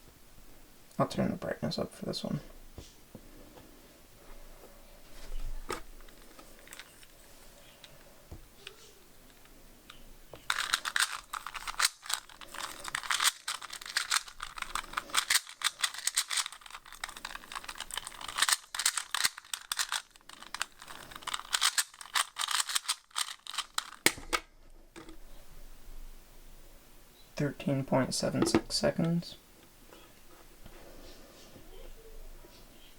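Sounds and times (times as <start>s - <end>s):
puzzle cube clicking and rattling: 10.4s - 24.2s.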